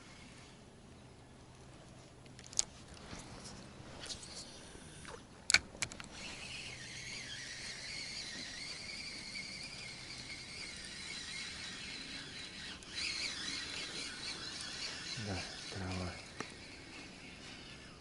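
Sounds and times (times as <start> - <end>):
fishing reel whining: 0.0 - 0.6, 6.1 - 18.0.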